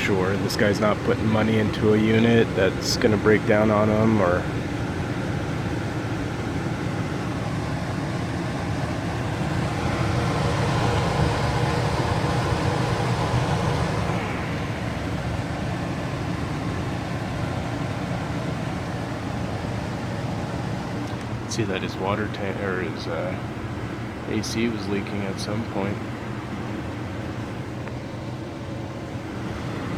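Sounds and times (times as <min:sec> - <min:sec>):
gas furnace hum and whoosh: 0:00.0 - 0:29.9.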